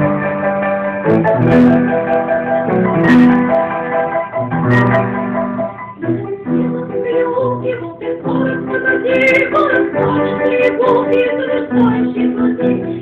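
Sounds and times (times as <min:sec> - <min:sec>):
piano accompaniment: 0:00.0 - 0:13.0
woman singing with vibrato: 0:06.0 - 0:13.0.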